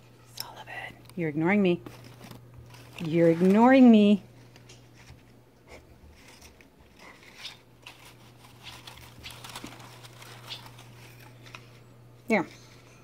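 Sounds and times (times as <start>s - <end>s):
squirrel rustling and clicking: 6.1s - 12.6s.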